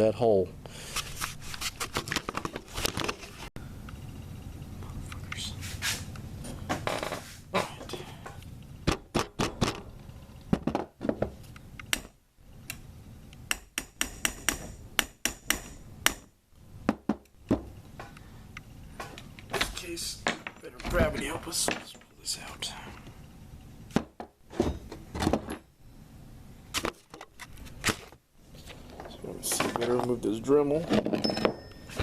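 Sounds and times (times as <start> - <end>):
hammer tapping metal pin: 13.5 - 16.3.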